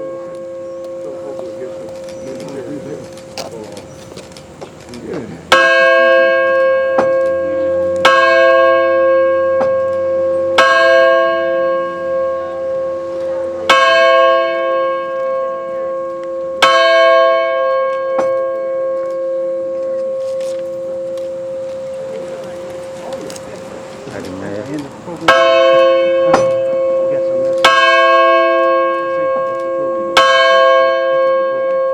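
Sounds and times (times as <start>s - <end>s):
large bell tolling: 5.5s - 23.1s, 25.2s - 31.9s.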